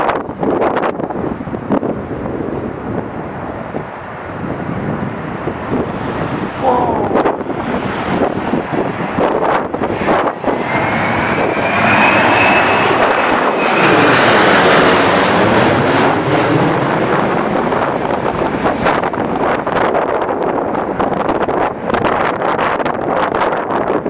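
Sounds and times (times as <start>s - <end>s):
airliner engine rush: 0.0s - 24.0s
airliner engine whine: 0.0s - 24.0s
wind buffeting microphone: 0.0s - 24.0s.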